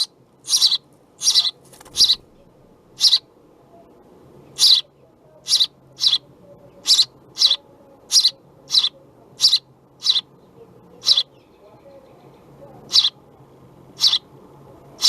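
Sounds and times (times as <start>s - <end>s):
nestlings chirping harshly: 0.0s - 3.4s, 4.2s - 15.0s.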